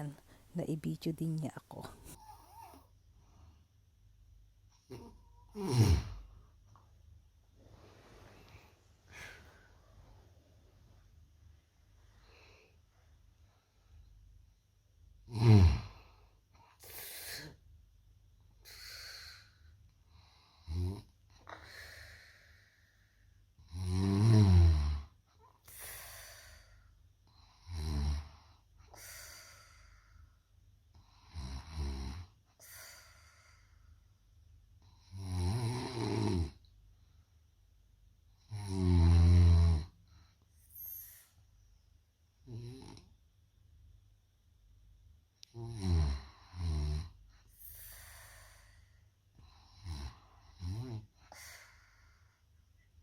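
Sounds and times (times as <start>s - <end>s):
person snoring: 4.9s - 6.2s, 15.3s - 16.0s, 23.7s - 25.1s, 35.0s - 36.6s, 38.5s - 39.9s, 42.5s - 43.1s, 45.5s - 47.2s, 49.4s - 51.0s.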